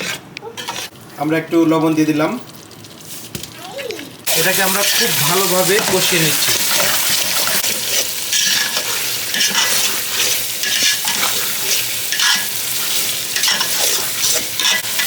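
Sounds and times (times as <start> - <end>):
spoon scraping a pot: 0.0 - 1.0, 4.8 - 15.0
food sizzling in hot oil: 0.6 - 15.0.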